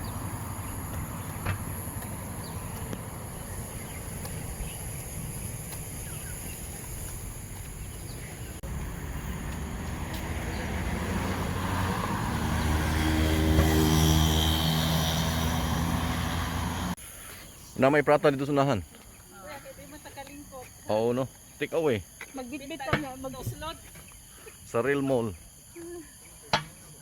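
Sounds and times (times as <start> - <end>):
motor engine passing: 8.6 - 17.0.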